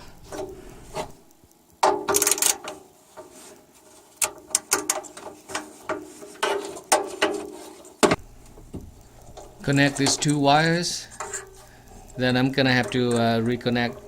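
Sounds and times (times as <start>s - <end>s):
scraping rattle: 1.9s - 14.0s
hand tool clicking on metal: 8.5s - 14.0s.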